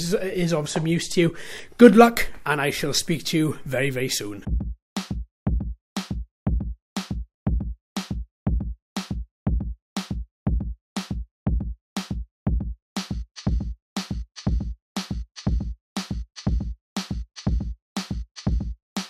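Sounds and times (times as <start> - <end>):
drum machine beat: 4.4 - 18.8.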